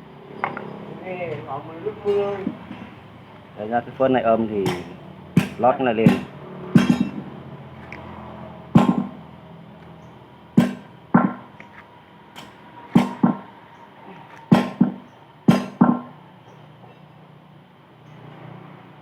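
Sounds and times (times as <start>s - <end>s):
hammer striking metal: 4.6s - 7.3s, 8.7s - 9.2s, 10.6s - 11.5s, 12.4s - 13.5s, 14.5s - 16.2s.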